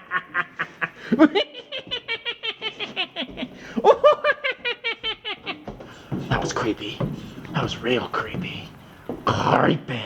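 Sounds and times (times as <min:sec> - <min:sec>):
person laughing: 0:00.0 - 0:06.6.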